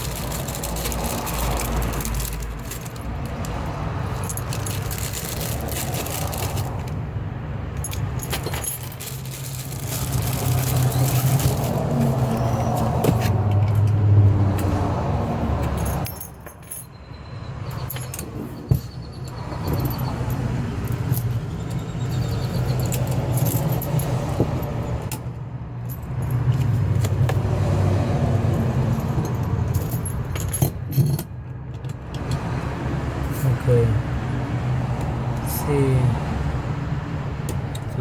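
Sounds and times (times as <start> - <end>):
keys jangling: 0.0 - 7.0, 7.8 - 14.0, 15.6 - 17.0, 17.8 - 25.2, 28.5 - 31.3.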